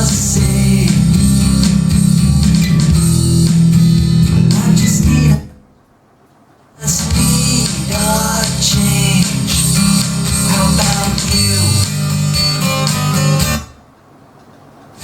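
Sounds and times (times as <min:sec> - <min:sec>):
guitar song with heavy bass: 0:00.0 - 0:05.6, 0:06.8 - 0:13.8.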